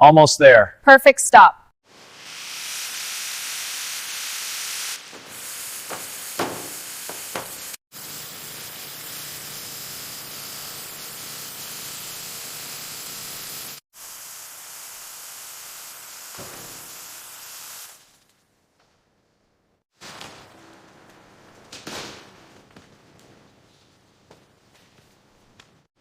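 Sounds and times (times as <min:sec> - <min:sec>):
steady hiss: 0:01.9 - 0:18.1.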